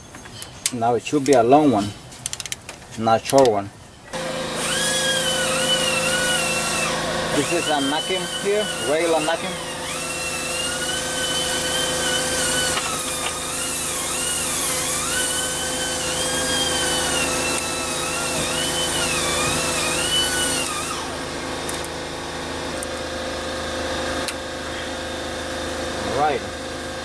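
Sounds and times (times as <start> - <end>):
power tool motor whirring: 4.1 - 23.0.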